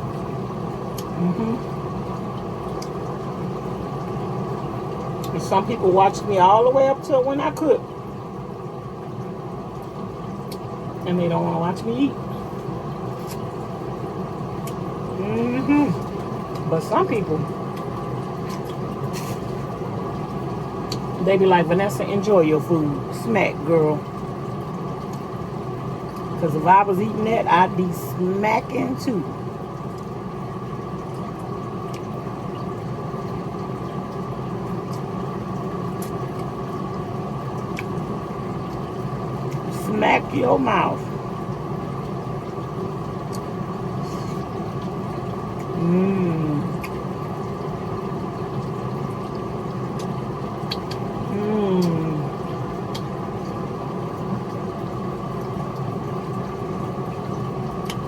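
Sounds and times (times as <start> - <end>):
low mechanical hum: 0.0 - 58.0
person humming: 1.2 - 1.6, 45.8 - 46.7.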